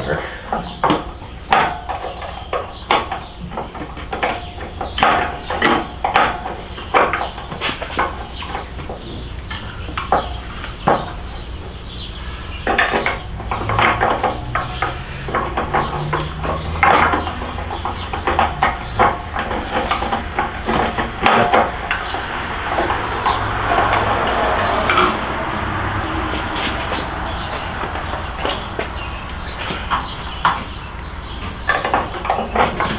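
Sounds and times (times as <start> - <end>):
metal tools clinking: 12.6 - 32.9.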